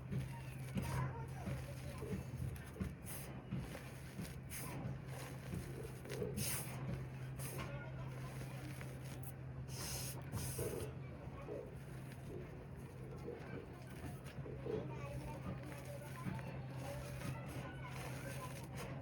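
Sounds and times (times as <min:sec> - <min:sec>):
squeaky crunches of cornstarch: 0:00.0 - 0:19.0.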